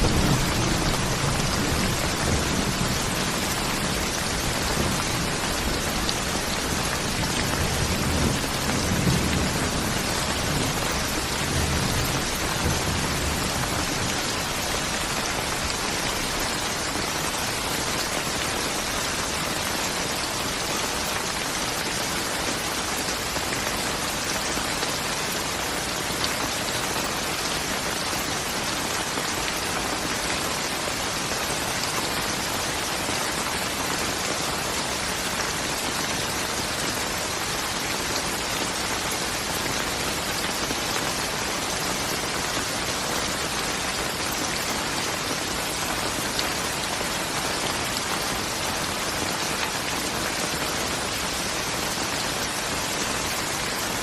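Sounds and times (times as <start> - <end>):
thunder rumble: 0.0 - 5.4
heavy rain falling: 0.0 - 54.0.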